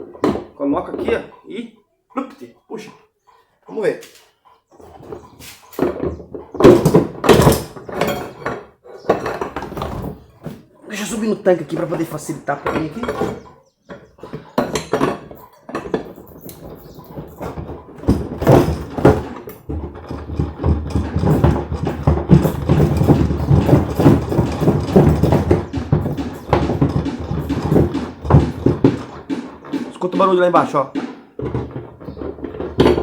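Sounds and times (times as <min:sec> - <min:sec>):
metal levers scraping and knocking: 0:06.6 - 0:10.2, 0:14.6 - 0:33.0.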